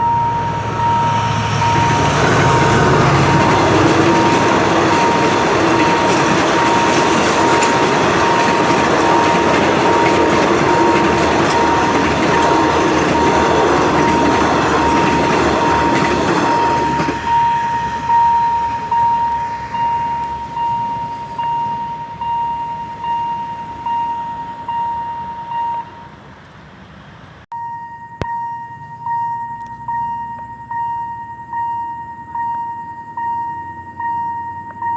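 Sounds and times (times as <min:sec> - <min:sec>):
high ringing tone: 0:00.0 - 0:26.2, 0:27.5 - 0:34.9
train running on rails: 0:00.0 - 0:27.5.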